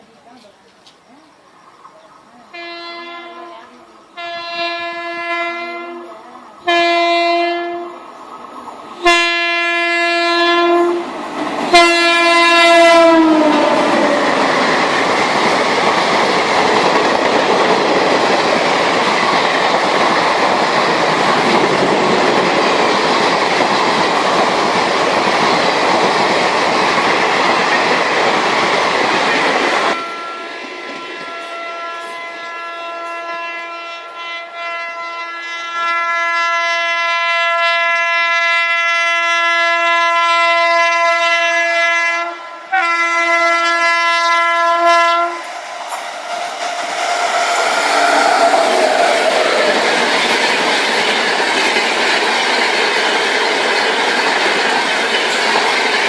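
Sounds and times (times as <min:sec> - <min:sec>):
train rushing on rails: 0:01.6 - 0:34.6, 0:35.4 - 0:56.0
train horn blasts: 0:02.5 - 0:08.0, 0:09.0 - 0:11.1, 0:11.7 - 0:14.3, 0:29.9 - 0:46.3, 0:47.1 - 0:49.9.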